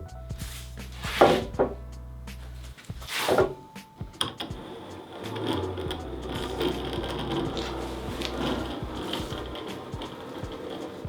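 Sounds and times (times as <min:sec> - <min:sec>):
hand tool strokes on wood: 0:00.4 - 0:01.8, 0:02.4 - 0:11.0.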